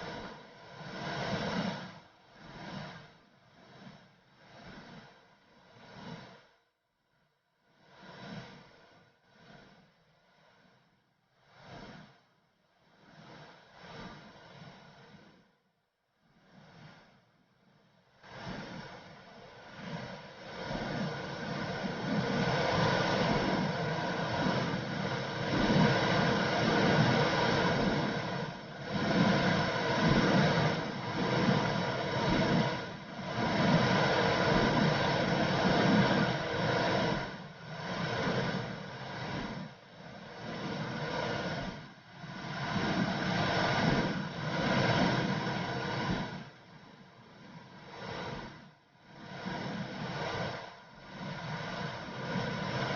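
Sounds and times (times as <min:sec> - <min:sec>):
womb whooshing noise: 0:18.2 - 0:52.9.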